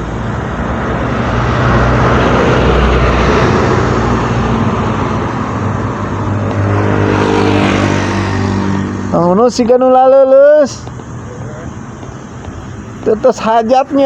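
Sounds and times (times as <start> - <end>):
vehicle driving past: 0.0 - 9.8.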